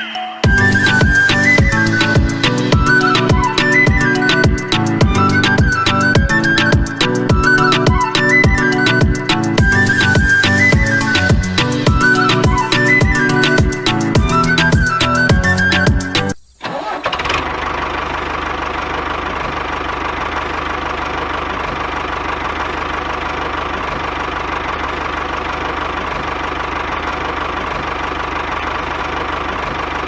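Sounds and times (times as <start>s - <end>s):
high engine whine: 0.0s - 30.0s
small engine idling: 0.4s - 15.5s, 16.6s - 30.0s.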